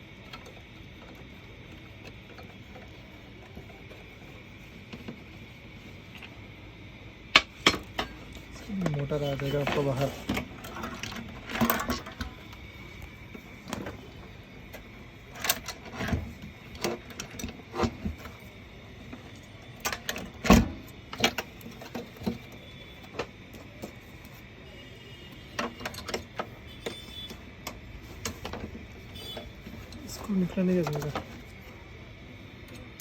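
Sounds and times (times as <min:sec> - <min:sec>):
plastic and metal parts clicking: 0:25.5 - 0:31.6.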